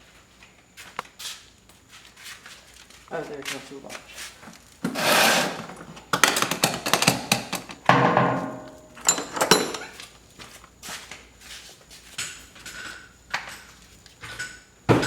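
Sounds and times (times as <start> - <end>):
scrapes and knocks: 7.9 - 9.0
metal hand tools clanking: 7.9 - 9.9.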